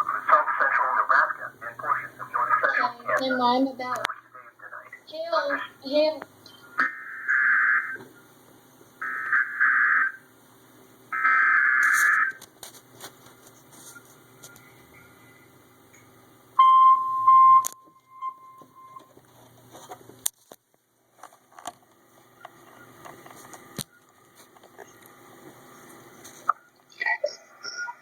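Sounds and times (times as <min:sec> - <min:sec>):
faint radio static: 0:00.0 - 0:16.6, 0:18.6 - 0:28.0
alarm tone beep: 0:16.6 - 0:19.1.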